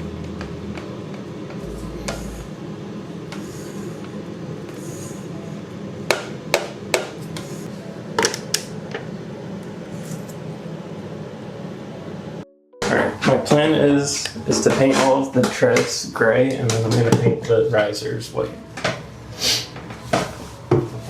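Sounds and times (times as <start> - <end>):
low hum: 1.5 - 4.0.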